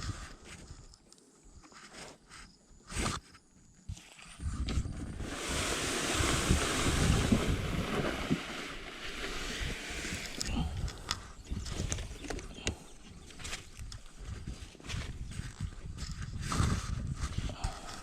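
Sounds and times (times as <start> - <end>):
wind and water rushing: 5.0 - 11.2.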